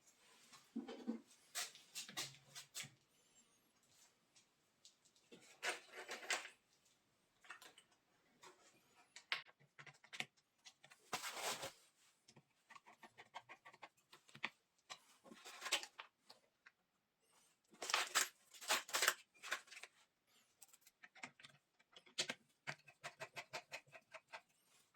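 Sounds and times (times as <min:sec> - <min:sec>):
clicks and taps of small parts: 0:20.6 - 0:24.4.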